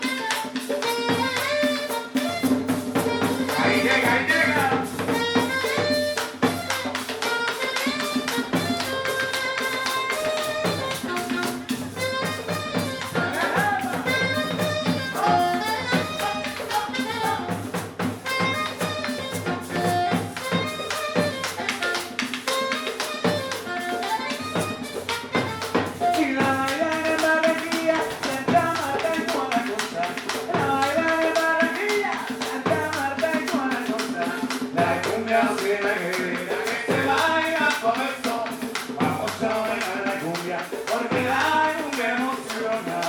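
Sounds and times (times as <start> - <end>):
horn melody: 0.0 - 27.0
drum and percussion beat: 0.0 - 43.0.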